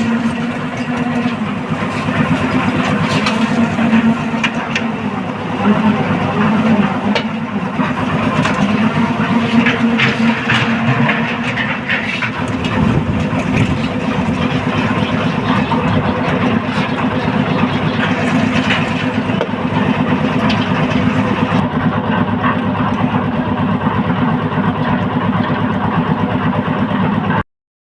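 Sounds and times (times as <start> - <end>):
concrete mixer engine drone: 0.0 - 27.4.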